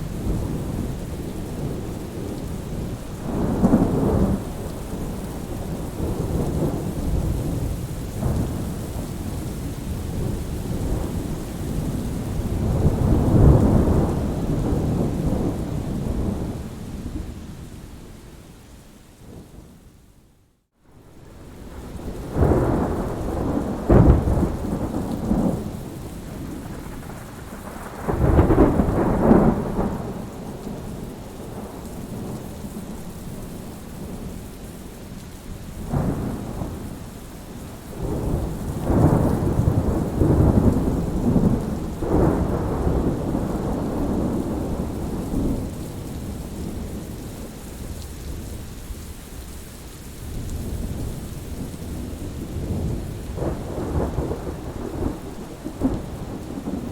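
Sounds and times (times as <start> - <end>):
steady rain: 0.0 - 56.9
thunder cracks and rumbles: 0.1 - 17.3, 21.6 - 32.4, 35.8 - 37.0, 37.9 - 47.1, 50.4 - 56.9.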